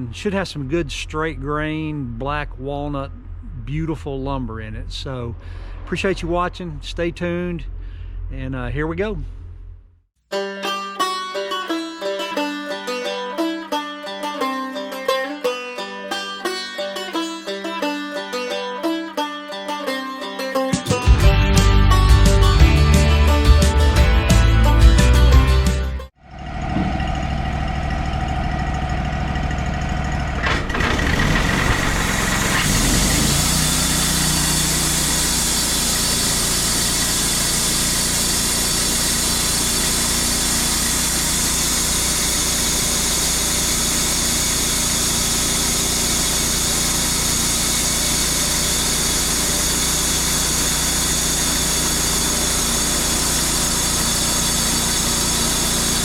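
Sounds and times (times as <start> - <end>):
band sawmill running: 20.4 - 56.0.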